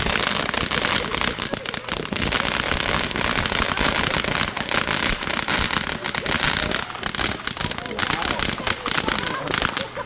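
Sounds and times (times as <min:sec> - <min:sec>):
fireworks crackling pops: 0:00.0 - 0:10.0.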